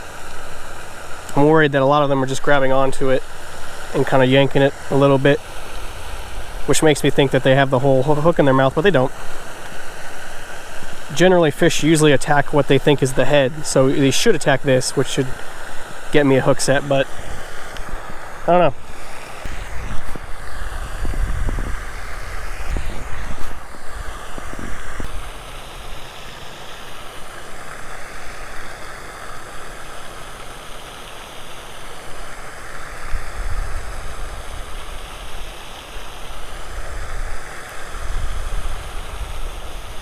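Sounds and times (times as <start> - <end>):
outdoor hiss: 0.0 - 40.0
wind buffeting microphone: 18.8 - 25.2.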